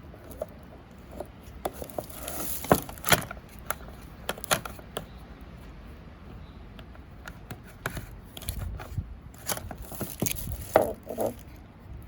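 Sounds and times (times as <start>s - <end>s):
rustling scrape: 0.2s - 4.0s, 7.7s - 11.6s.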